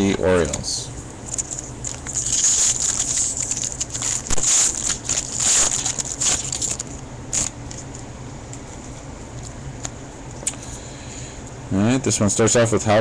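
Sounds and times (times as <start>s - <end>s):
wrapper tearing and crinkling: 1.3s - 7.6s.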